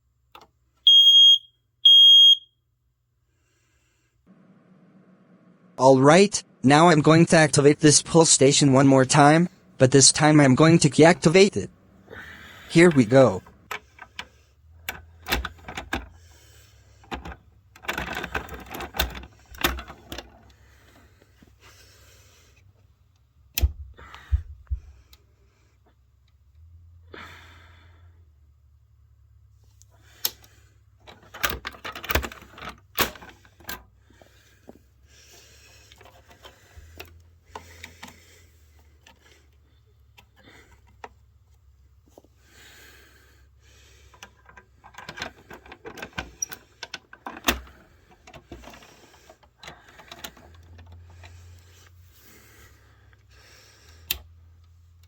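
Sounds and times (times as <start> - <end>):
fire alarm pull station rattling: 17.0 - 20.5, 44.2 - 51.3.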